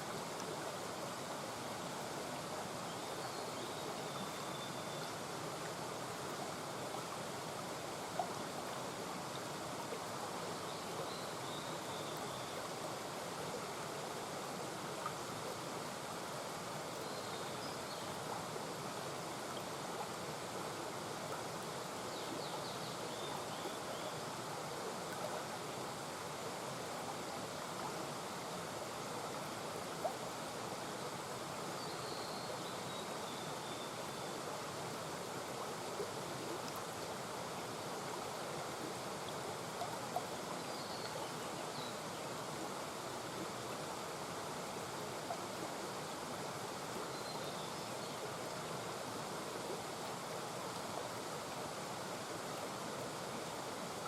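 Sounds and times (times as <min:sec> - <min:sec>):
brook murmuring over stones: 0:00.0 - 0:54.0.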